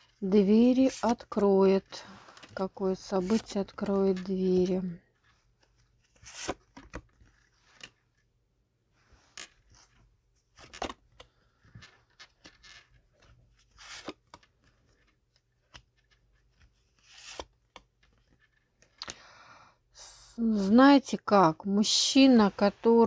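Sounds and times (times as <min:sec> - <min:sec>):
cards being shuffled: 0:02.2 - 0:08.2, 0:09.2 - 0:19.0.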